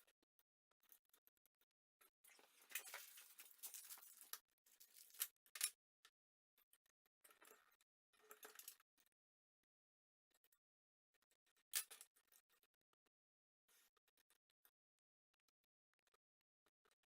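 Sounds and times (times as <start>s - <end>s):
rustling of plastic parts: 2.3s - 5.7s.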